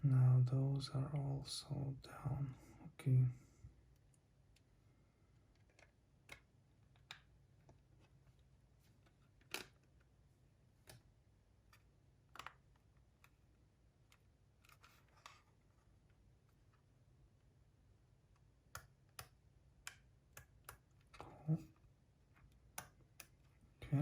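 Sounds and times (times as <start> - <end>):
faint low hum: 0.0 - 24.0
plastic parts clicking and tapping: 5.5 - 8.1, 9.0 - 10.1, 11.7 - 13.4.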